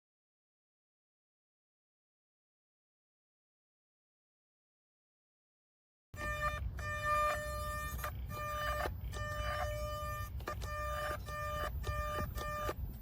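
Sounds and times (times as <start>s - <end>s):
electric motor whine: 6.2s - 13.0s.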